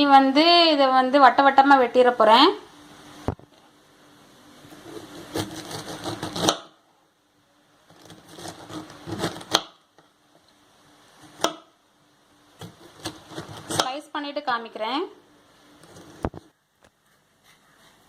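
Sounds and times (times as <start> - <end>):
knife sawing through pineapple: 4.8 - 6.6, 8.0 - 9.6, 12.8 - 13.8.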